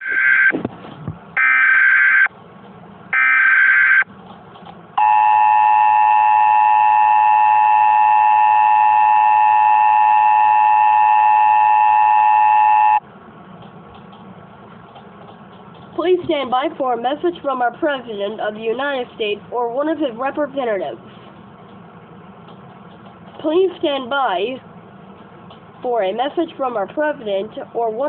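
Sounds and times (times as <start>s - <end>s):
harsh steady dual tone: 0.0s - 0.7s, 1.4s - 2.4s, 3.0s - 4.2s, 5.0s - 13.1s
digital data tone bursts: 1.4s - 2.3s, 3.2s - 4.0s.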